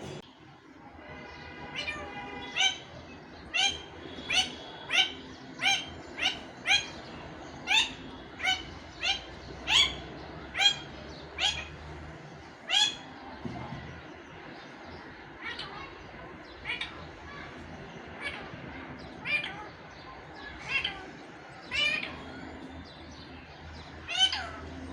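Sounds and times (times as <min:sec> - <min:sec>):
parakeet sharp rising calls: 0:03.5 - 0:11.8.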